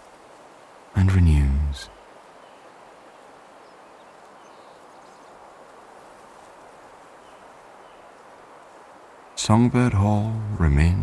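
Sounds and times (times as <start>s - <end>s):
gentle rustling hiss: 0.0s - 11.0s
faint bird chirps: 1.4s - 5.5s.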